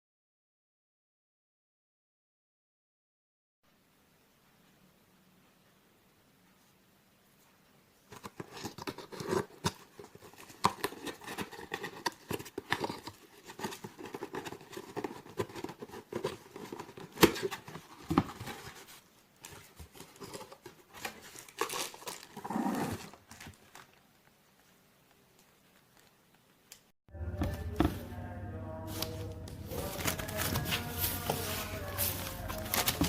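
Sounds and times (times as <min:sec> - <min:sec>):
packaging crinkling: 0:08.1 - 0:24.3, 0:28.9 - 0:33.0.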